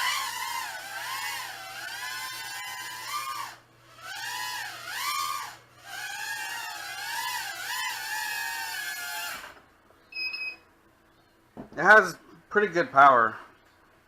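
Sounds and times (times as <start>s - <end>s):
quadcopter motors whining: 0.0s - 9.6s.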